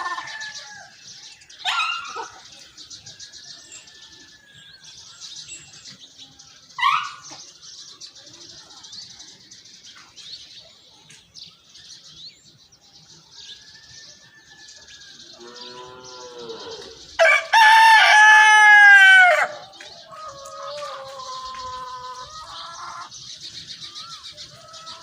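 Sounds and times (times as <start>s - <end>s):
small birds chirping: 0.0s - 25.0s
rooster crowing: 15.4s - 23.1s.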